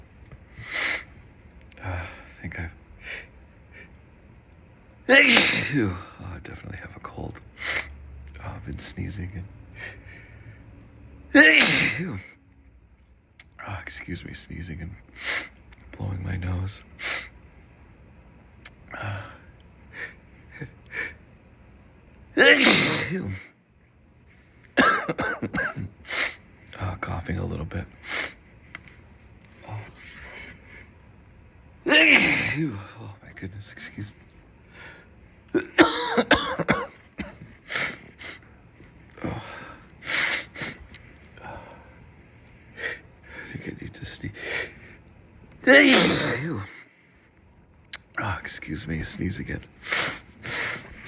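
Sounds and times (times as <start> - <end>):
man sneezing loudly: 5.1 - 6.1, 11.3 - 12.3, 22.4 - 23.5, 24.8 - 26.4, 31.9 - 33.0, 35.6 - 38.4, 45.6 - 46.8.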